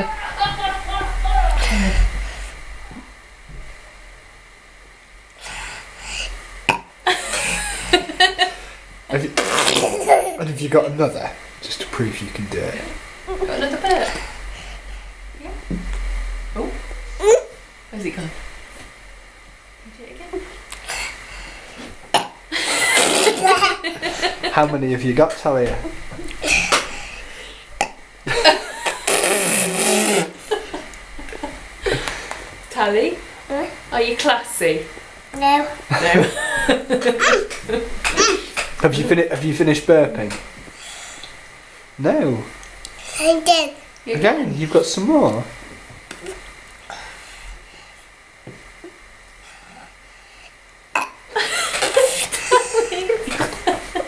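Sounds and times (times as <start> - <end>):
girl burping: 17.2 - 17.6, 38.1 - 38.5, 51.0 - 51.2
girl belching: 51.0 - 51.2.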